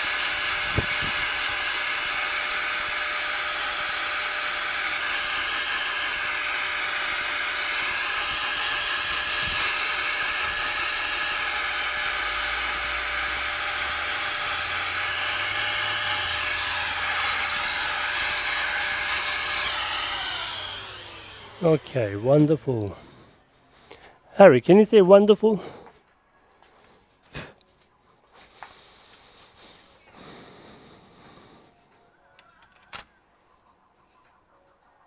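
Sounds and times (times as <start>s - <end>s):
electric air blower running: 0.0s - 23.2s.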